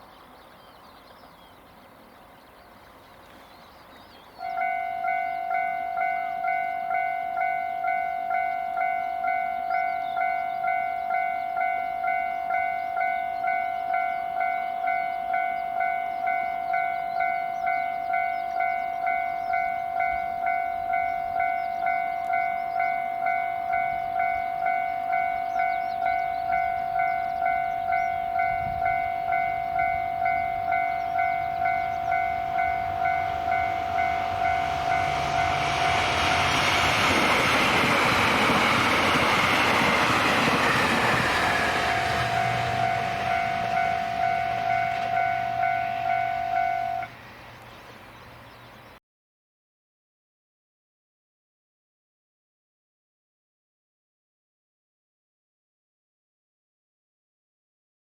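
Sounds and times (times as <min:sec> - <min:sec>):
train passing: 0:01.2 - 0:48.9
level crossing bell ringing: 0:04.5 - 0:47.1.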